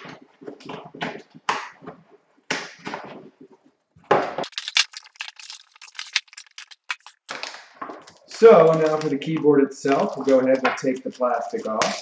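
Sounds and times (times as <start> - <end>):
cardboard rustling: 4.4 - 7.3
plastic wrap crinkling: 4.4 - 12.0.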